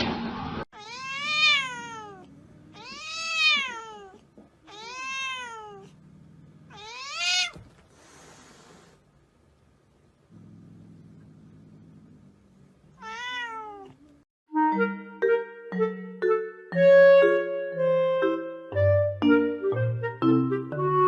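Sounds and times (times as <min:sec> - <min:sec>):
cat meowing: 0:00.8 - 0:06.0, 0:06.7 - 0:07.8, 0:13.0 - 0:14.2.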